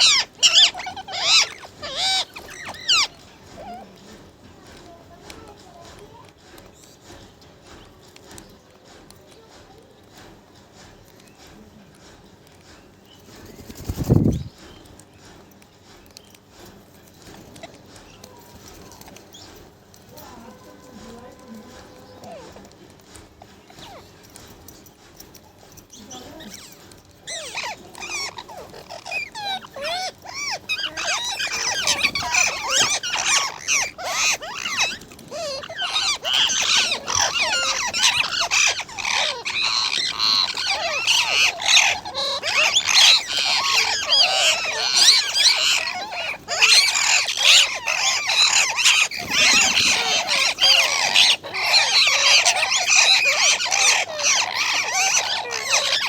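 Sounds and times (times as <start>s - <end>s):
parrots squawking: 0.0s - 5.8s, 17.5s - 22.8s, 23.4s - 24.6s, 25.2s - 56.0s.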